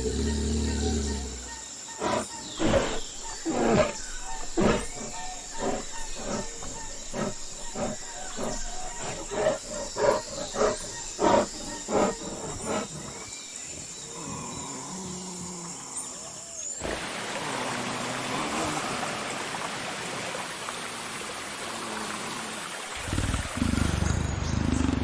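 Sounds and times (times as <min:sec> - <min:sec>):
harsh growling calls: 0:00.0 - 0:16.4.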